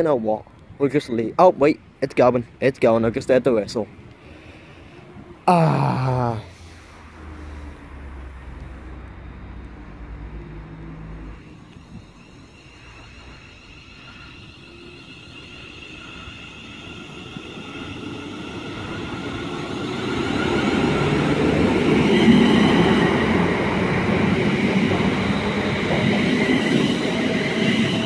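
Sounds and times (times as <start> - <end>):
high-pitched train whine: 4.3 - 28.0
train wheels rumbling: 9.6 - 28.0.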